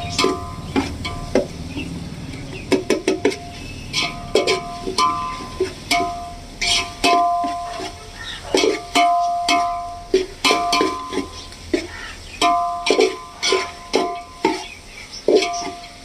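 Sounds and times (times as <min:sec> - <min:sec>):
plucked string instrument tune: 0:00.0 - 0:11.6.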